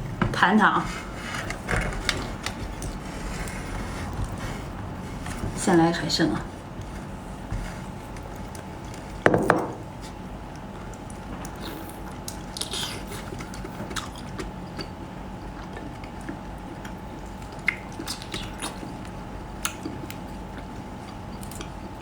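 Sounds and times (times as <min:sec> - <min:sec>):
faint electrical hum: 0:00.0 - 0:22.0
wet chewing and smacking: 0:07.8 - 0:09.2, 0:09.9 - 0:22.0.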